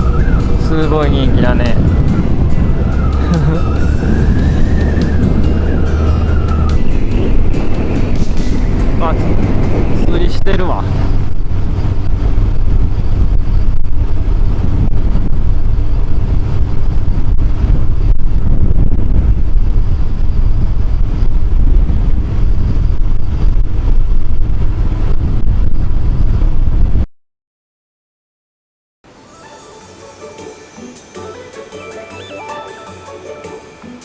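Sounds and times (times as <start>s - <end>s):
motorcycle engine drone: 0.0s - 27.0s
wind buffeting microphone: 0.0s - 27.1s.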